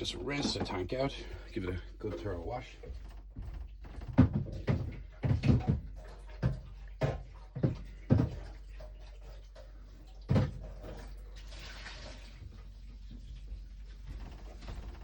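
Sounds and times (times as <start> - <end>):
plastic tank knocks and clunks: 0.3 - 1.0, 3.9 - 8.6, 10.3 - 10.8.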